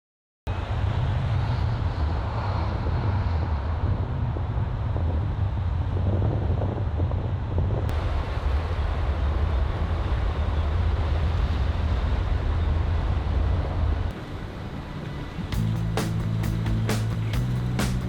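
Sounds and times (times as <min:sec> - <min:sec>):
car road and wind noise: 0:00.5 - 0:18.0.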